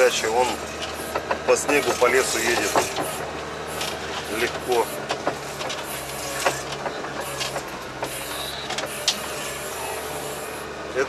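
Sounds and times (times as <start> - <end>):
vehicle engine running: 0.0 - 11.0
cab knocks and rattles: 0.4 - 8.9.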